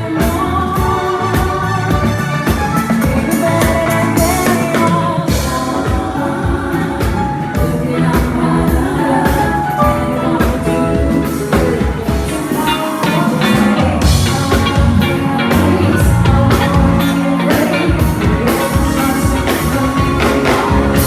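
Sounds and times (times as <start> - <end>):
person singing: 0.0 - 21.0
sustained keyboard or guitar notes: 0.0 - 21.0
drum kit hits: 0.2 - 21.0.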